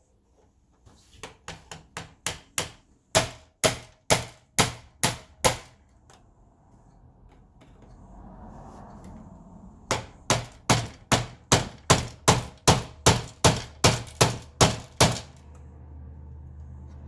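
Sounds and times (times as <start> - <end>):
sharp knocking blows: 9.9 - 15.4.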